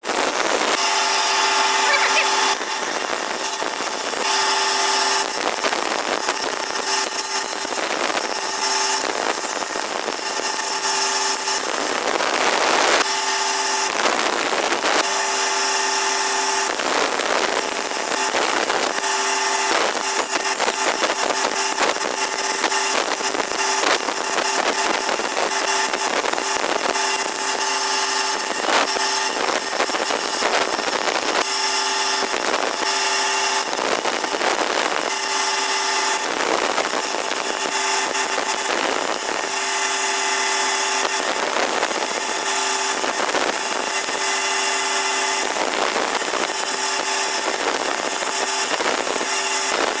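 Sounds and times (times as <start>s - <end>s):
power tool motor hum: 0.1s - 50.0s
saw cutting wood: 0.2s - 5.4s.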